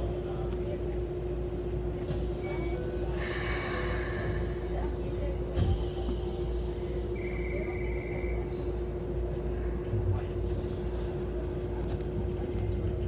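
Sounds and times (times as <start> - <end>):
machinery humming and rumbling: 0.9 - 13.0
hiss: 3.1 - 4.8.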